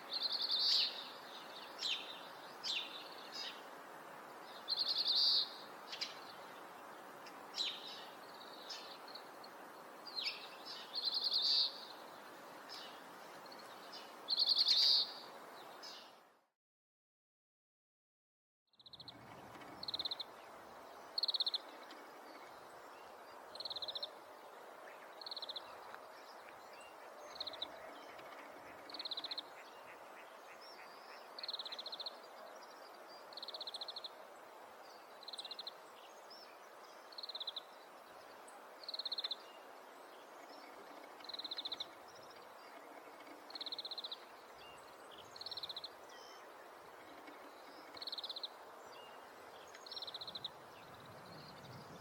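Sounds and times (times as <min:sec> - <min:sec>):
steady background hiss: 0:00.0 - 0:16.4, 0:18.8 - 0:52.0.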